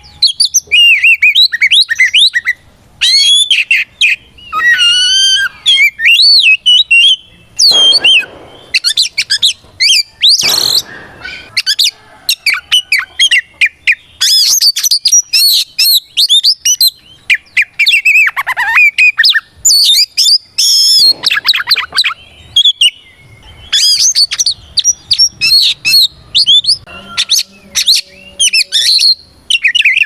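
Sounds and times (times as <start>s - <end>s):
bird singing whistled phrases: 0.0s - 30.0s
harsh rasping bird notes: 6.9s - 13.1s, 20.6s - 22.7s.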